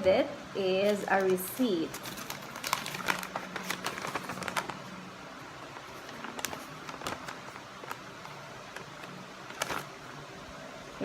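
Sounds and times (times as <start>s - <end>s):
paper rustling: 0.9s - 4.9s, 5.6s - 10.0s
packaging clicks: 1.2s - 4.8s, 5.8s - 9.9s.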